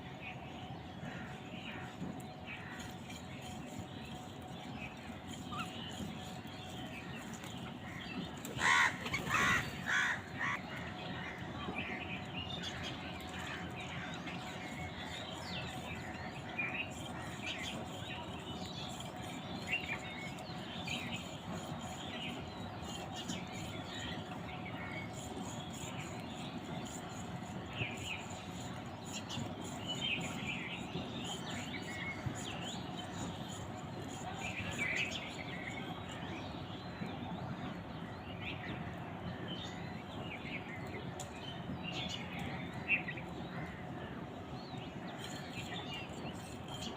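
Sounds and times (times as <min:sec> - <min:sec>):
small birds chirping: 0:00.6 - 0:46.9
crows cawing: 0:08.6 - 0:10.6.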